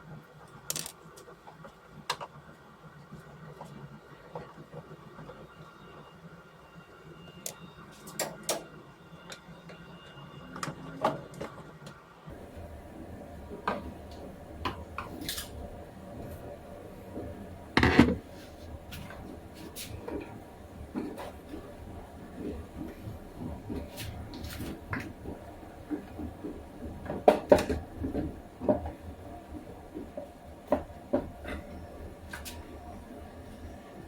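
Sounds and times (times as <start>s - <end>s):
knocks and clatter of hard objects: 12.3s - 32.6s.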